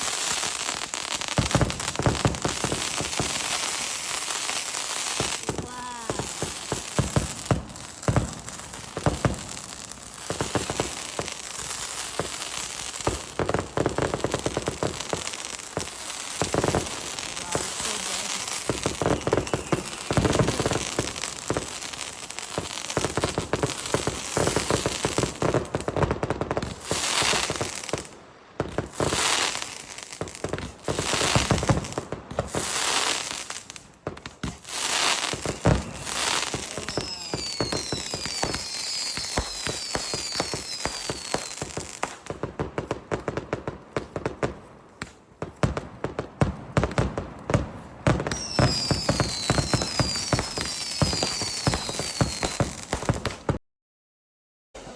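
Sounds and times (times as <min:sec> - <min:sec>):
fireworks whooshing: 0:00.0 - 0:26.0, 0:26.6 - 0:53.6
fireworks crackling and popping: 0:00.0 - 0:53.6
short falling whistles: 0:19.0 - 0:20.8, 0:35.0 - 0:41.1, 0:48.3 - 0:52.6.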